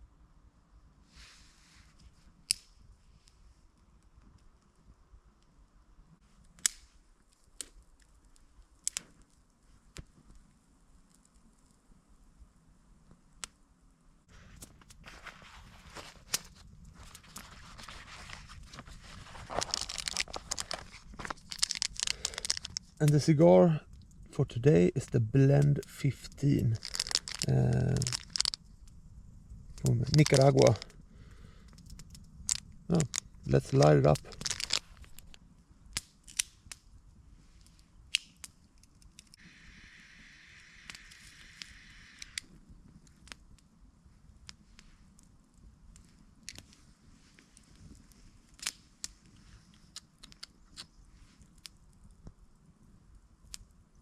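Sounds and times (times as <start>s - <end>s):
clicks and crackles: 1.9s - 5.6s, 6.3s - 12.4s, 13.0s - 13.6s, 14.3s - 39.4s, 40.5s - 54.0s
packaging rustling and crinkling: 14.4s - 23.0s, 26.6s - 28.6s, 29.8s - 30.9s, 31.9s - 35.4s
lighter flame hissing: 37.6s - 43.4s
lighter clicking: 40.8s - 42.4s.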